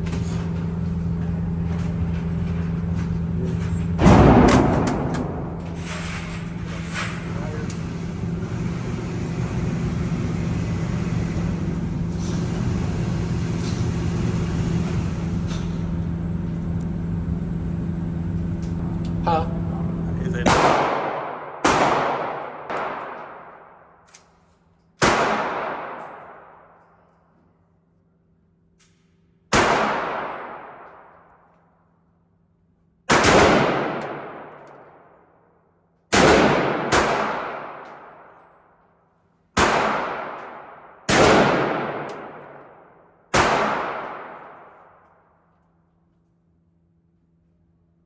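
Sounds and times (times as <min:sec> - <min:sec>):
gunshots with long echo: 0:04.0 - 0:05.8, 0:20.4 - 0:23.9, 0:25.0 - 0:26.7, 0:29.5 - 0:31.3, 0:33.1 - 0:35.2, 0:36.1 - 0:38.4, 0:39.6 - 0:45.1.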